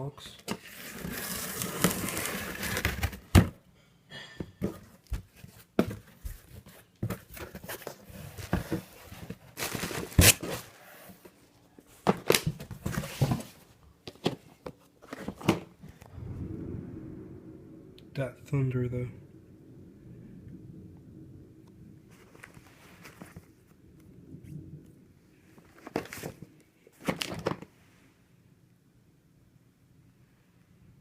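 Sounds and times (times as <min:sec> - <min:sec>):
plastic shrink wrap crinkling and tearing: 0:00.6 - 0:03.3, 0:09.4 - 0:10.8.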